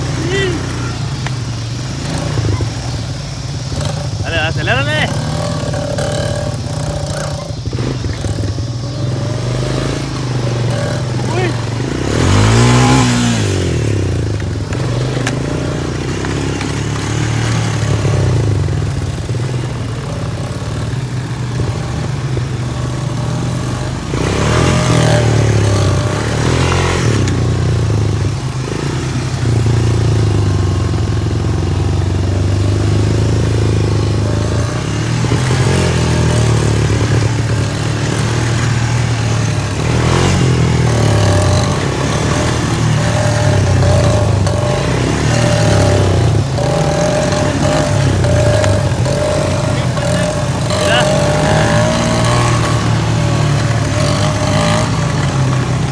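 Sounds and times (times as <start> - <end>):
atv engine revving: 0.0 - 55.9.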